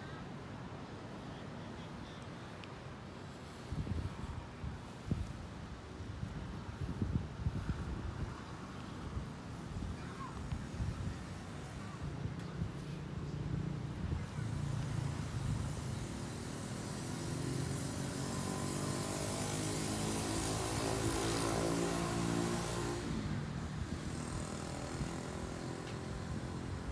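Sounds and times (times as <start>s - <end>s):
vehicle engine passing by: 13.5s - 26.9s.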